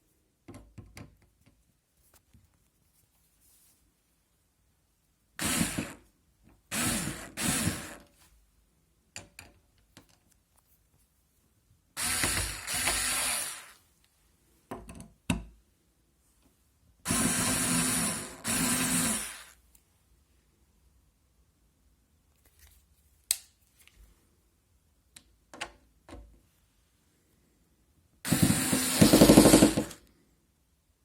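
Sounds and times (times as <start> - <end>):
cordless screwdriver running: 5.4 - 6.0, 6.7 - 8.0, 12.0 - 13.8, 17.1 - 19.6, 28.3 - 30.0.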